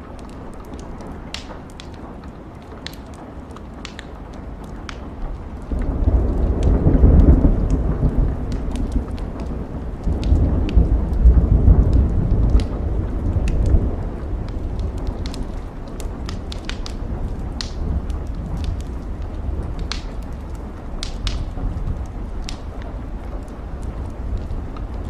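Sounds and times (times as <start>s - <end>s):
steady rain: 0.0s - 25.0s
wood fire crackling: 0.0s - 25.0s
rolling thunder: 5.2s - 25.0s.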